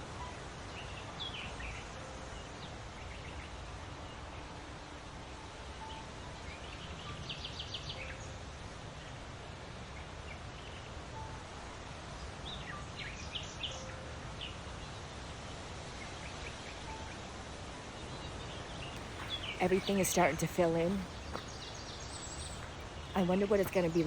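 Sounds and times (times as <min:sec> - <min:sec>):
steady background noise: 0:13.8 - 0:24.0
songbirds chirping: 0:18.4 - 0:24.0.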